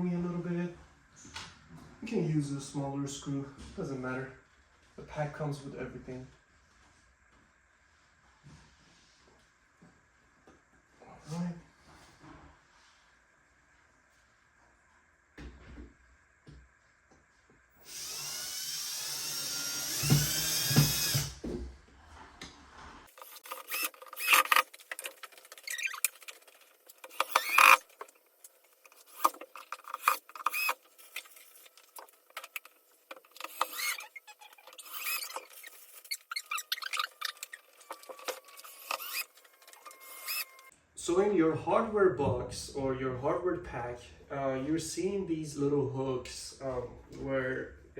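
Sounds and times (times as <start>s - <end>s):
cordless drill whine: 17.7s - 21.4s, 23.2s - 24.6s, 27.0s - 27.8s, 30.0s - 30.8s, 33.4s - 36.6s, 37.4s - 40.7s.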